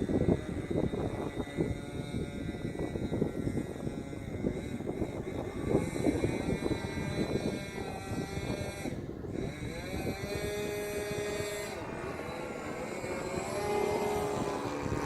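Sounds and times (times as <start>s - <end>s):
model airplane engine running: 0.0s - 15.0s.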